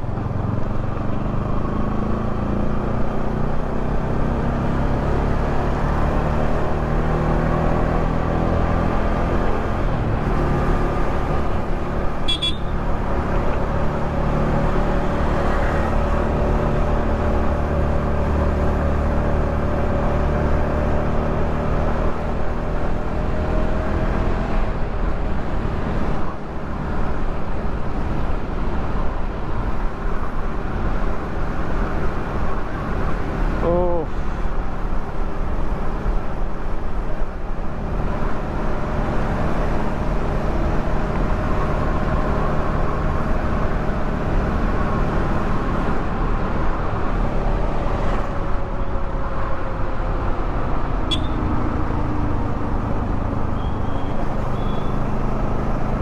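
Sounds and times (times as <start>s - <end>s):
road and wind noise: 0.0s - 56.0s
motorcycle engine running: 51.1s - 52.1s.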